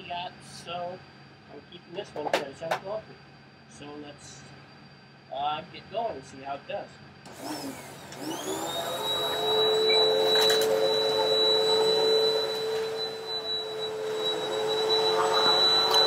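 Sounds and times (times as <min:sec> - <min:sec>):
vacuum cleaner motor whining: 0:07.3 - 0:16.0.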